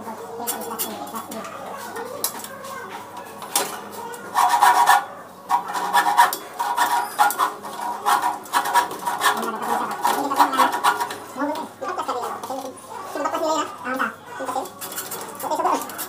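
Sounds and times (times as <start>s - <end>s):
hand tool rasping on metal: 4.2s - 11.5s.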